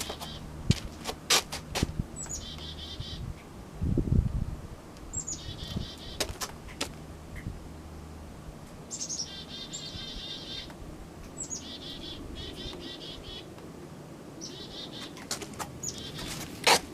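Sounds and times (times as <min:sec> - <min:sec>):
songbird singing with trill: 0:02.2 - 0:03.2, 0:05.1 - 0:06.2, 0:08.9 - 0:10.7, 0:11.3 - 0:13.5, 0:14.4 - 0:15.2.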